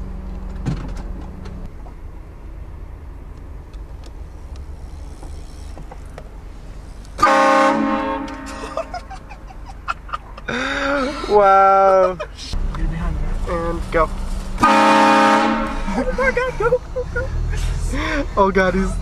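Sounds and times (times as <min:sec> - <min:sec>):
moving vehicle rumble: 0:00.0 - 0:19.0
train horn blast: 0:07.2 - 0:08.9, 0:14.6 - 0:15.9.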